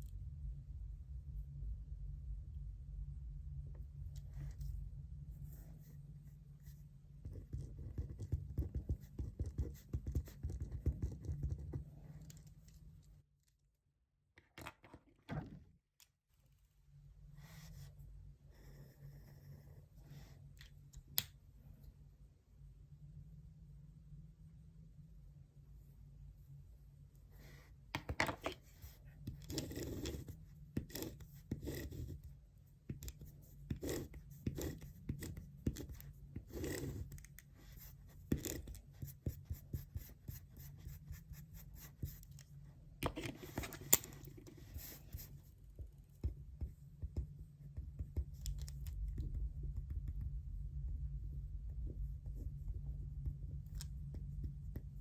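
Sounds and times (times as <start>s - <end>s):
low room hum: 0.0s - 55.0s
pen writing on paper: 7.2s - 11.8s, 28.8s - 32.2s, 32.9s - 42.2s.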